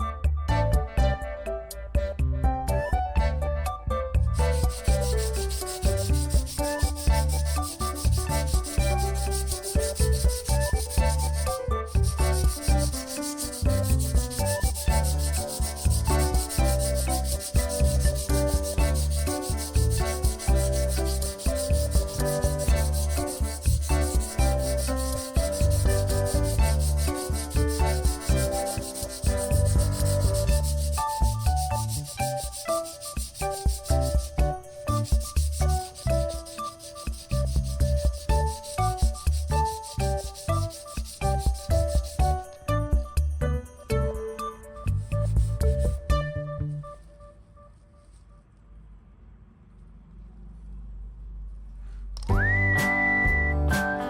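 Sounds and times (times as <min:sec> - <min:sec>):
abrasive sanding: 0:04.4 - 0:42.6, 0:45.1 - 0:46.1.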